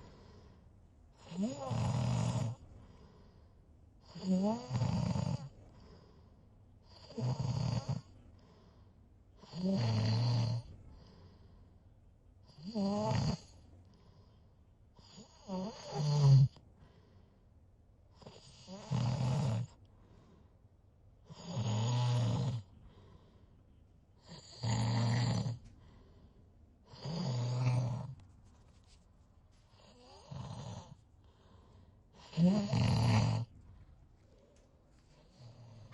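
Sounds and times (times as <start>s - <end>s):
snoring: 1.2s - 3.0s, 4.0s - 6.1s, 6.8s - 8.1s, 9.4s - 11.2s, 12.5s - 13.6s, 15.0s - 16.6s, 18.2s - 19.8s, 21.3s - 23.0s, 24.2s - 25.7s, 26.9s - 28.2s, 29.7s - 31.0s, 31.6s - 33.5s, 35.2s - 35.9s.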